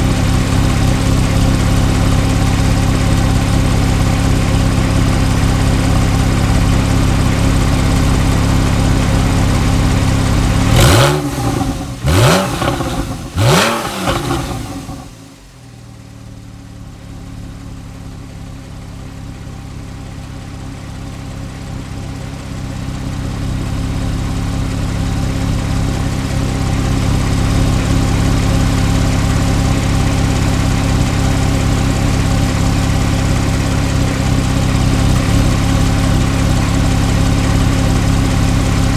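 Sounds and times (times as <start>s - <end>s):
sports car engine idling and revving: 0.0s - 38.9s.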